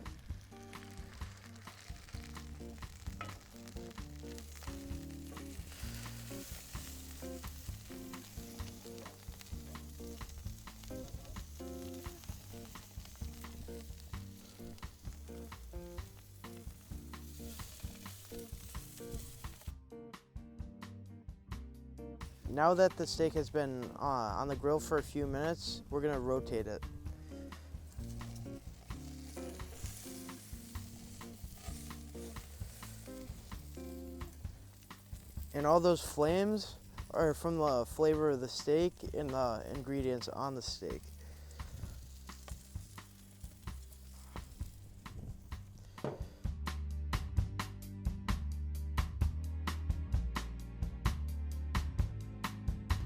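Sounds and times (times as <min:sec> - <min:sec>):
steak sizzling on a grill: 0:00.0 - 0:19.7, 0:27.2 - 0:45.7
music playing: 0:00.0 - 0:53.0.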